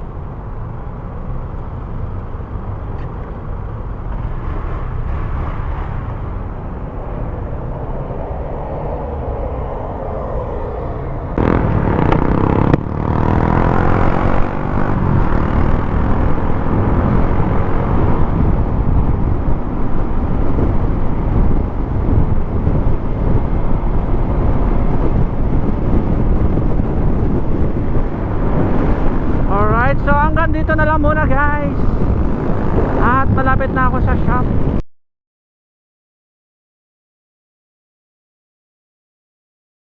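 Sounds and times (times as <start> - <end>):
vehicle road and wind rumble: 0.0 - 34.8.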